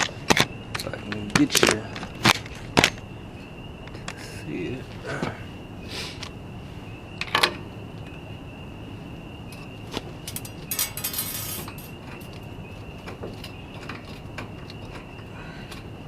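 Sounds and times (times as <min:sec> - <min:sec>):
wire coat hanger rattling: 0:10.2 - 0:12.2
metal clinks: 0:10.2 - 0:12.4.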